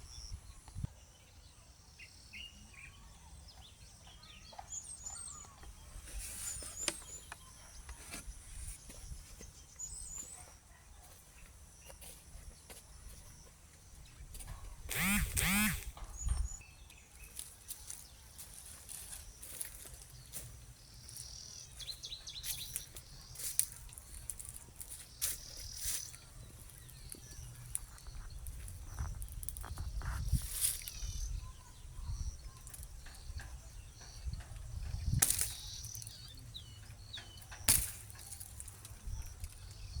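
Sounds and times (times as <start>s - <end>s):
small birds chirping: 0.0s - 40.0s
insects: 6.7s - 40.0s
sharp clicks and rustles: 14.9s - 16.0s.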